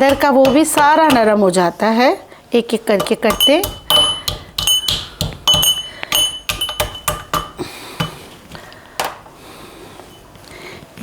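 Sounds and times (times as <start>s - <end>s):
pestle pounding in a mortar: 0.0s - 1.4s, 3.0s - 8.2s.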